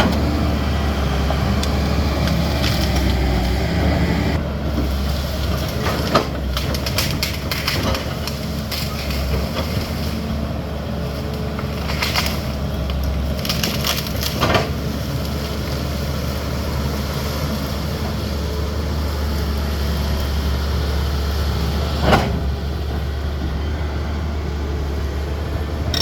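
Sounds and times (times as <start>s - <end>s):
excavator diesel engine running: 0.0s - 26.0s
wood cracking and splintering: 1.6s - 3.7s, 4.8s - 10.3s, 11.1s - 16.1s.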